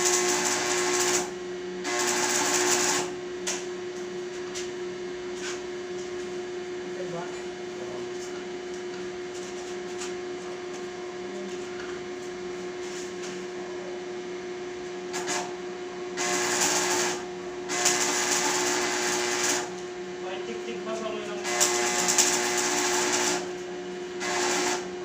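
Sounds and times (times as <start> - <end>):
crackling welding arc: 0.0 - 1.3, 1.9 - 3.1, 15.2 - 15.5, 16.2 - 19.7, 21.5 - 23.5, 24.2 - 24.8
steady electrical hum: 0.0 - 25.0.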